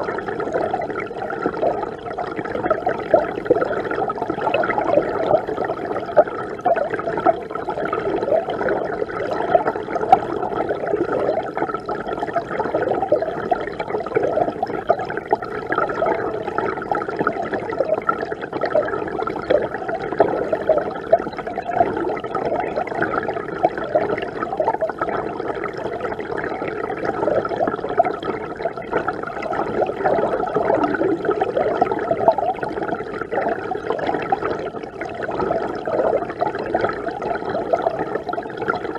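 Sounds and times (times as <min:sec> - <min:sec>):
river water flowing and bubbling: 0:00.0 - 0:38.9.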